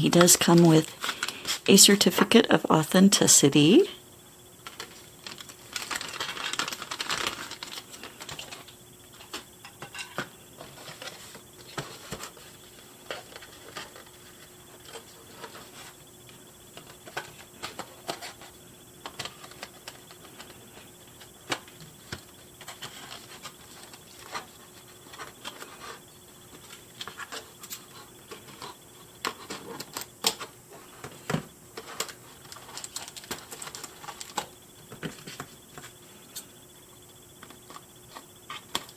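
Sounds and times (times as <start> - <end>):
packaging rustling: 0.0 - 1.7, 4.6 - 9.4, 21.5 - 35.9.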